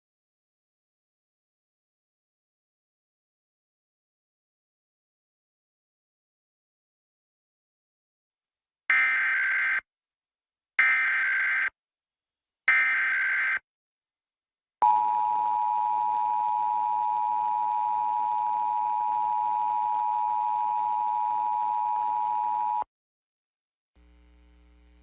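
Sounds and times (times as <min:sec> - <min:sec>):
two-tone attention signal: 0:14.8 - 0:22.8.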